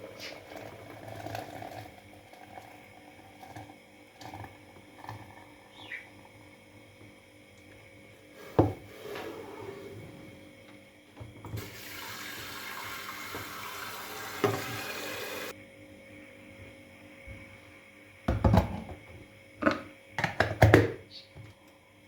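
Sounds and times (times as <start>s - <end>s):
tap water running into sink: 11.2s - 15.5s.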